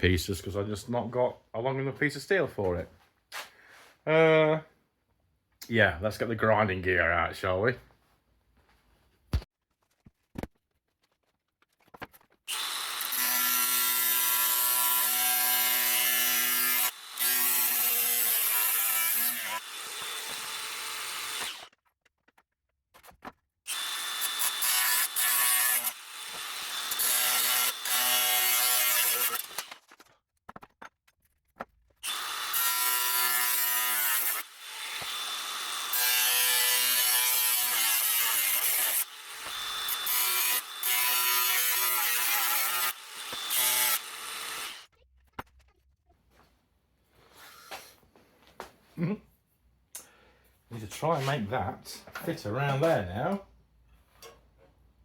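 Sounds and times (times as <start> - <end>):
angle grinder cutting sheet steel: 12.5 - 21.7, 23.7 - 29.8, 32.0 - 44.9.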